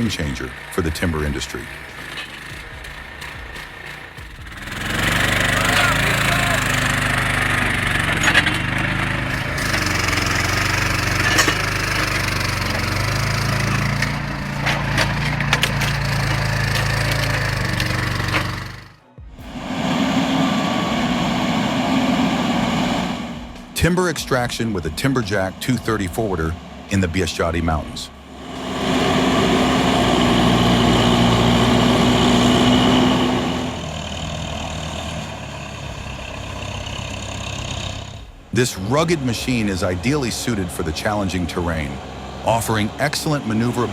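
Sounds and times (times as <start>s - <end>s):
machine engine running: 0.0s - 43.9s
wood splintering cracks: 7.5s - 18.9s.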